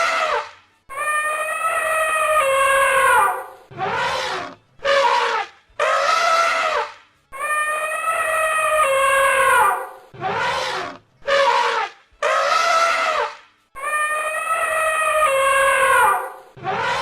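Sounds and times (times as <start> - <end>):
elephant trumpeting: 1.0 - 17.0.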